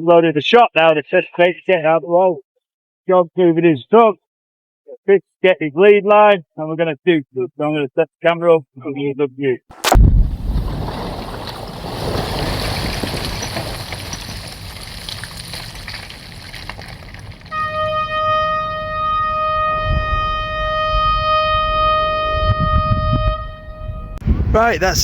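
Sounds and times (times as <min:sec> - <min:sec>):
rock debris rumbling and rattling: 0:09.9 - 0:17.6
long air horn blast: 0:17.5 - 0:24.2.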